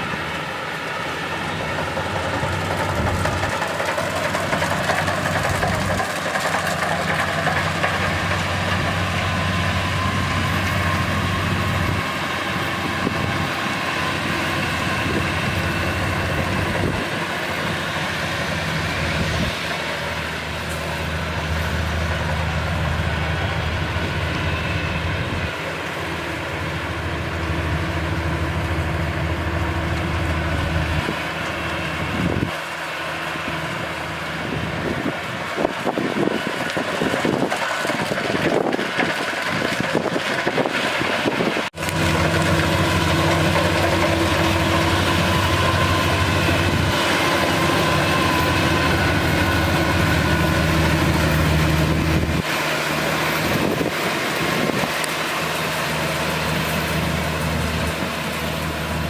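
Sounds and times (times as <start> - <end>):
combine harvester diesel engine running: 0.0 - 59.0.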